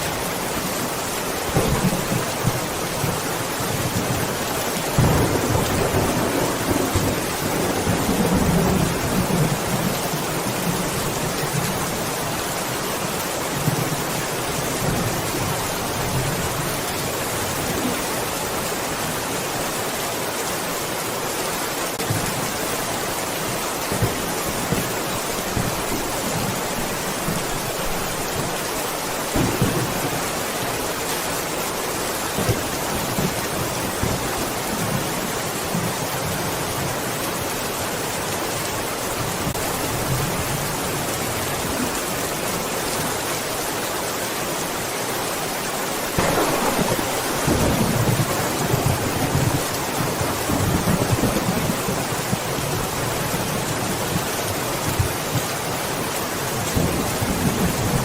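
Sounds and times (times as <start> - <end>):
steady rain hiss: 0.0 - 58.0
thunder rumbling: 1.4 - 12.2, 23.8 - 36.5, 46.2 - 54.3.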